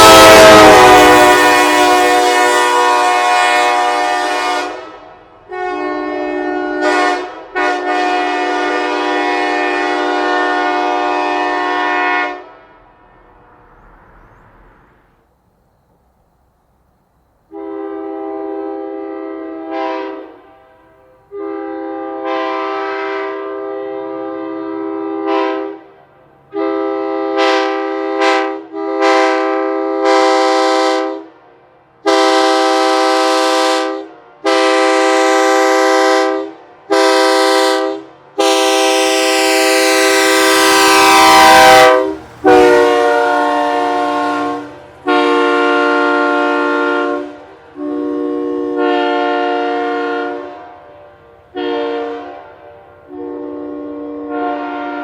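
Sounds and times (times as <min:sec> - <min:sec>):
train horn blasts: 0:00.0 - 0:13.6, 0:17.5 - 0:55.0.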